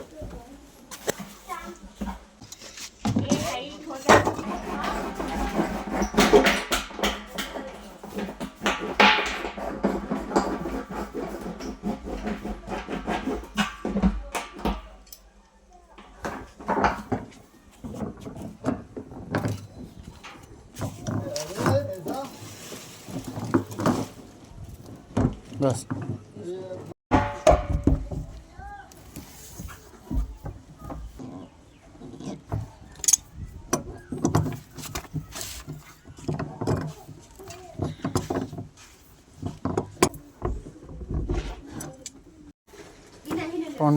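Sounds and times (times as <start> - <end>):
tools knocking and clattering: 0.2 - 22.2, 27.1 - 28.5, 32.1 - 42.3
knocks and clicks of tools: 4.1 - 15.3, 27.1 - 28.4.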